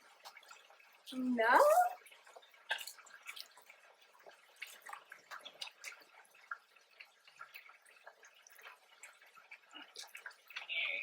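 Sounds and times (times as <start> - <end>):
chewing and mouth noises: 9.5 - 10.9.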